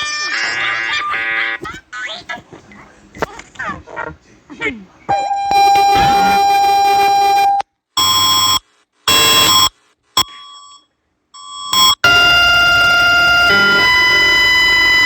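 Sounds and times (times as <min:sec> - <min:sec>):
steady alarm tone: 0:05.1 - 0:09.7, 0:11.4 - 0:15.0.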